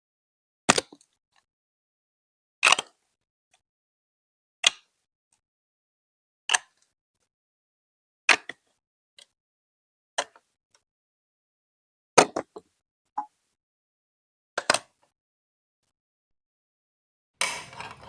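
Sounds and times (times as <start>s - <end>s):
plastic toy bricks clicking: 17.4s - 18.0s.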